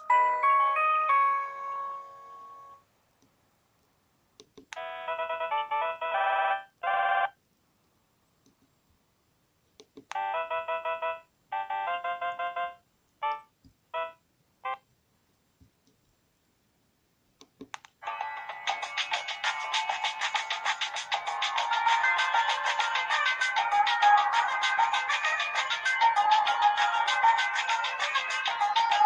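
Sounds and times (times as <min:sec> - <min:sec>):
electronic ringtone melody: 0:00.0 - 0:02.8, 0:04.8 - 0:07.4, 0:10.2 - 0:14.8, 0:18.0 - 0:29.0.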